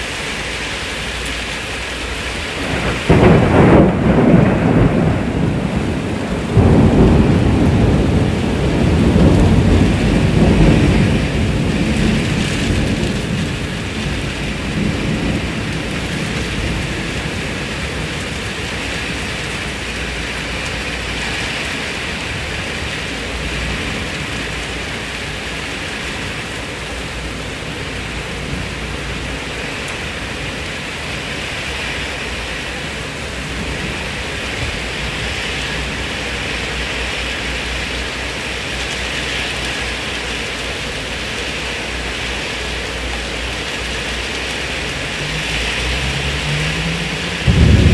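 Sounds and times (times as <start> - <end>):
heavy rain: 0.0 - 47.9
low thunder rumble: 2.3 - 21.1, 43.8 - 47.9.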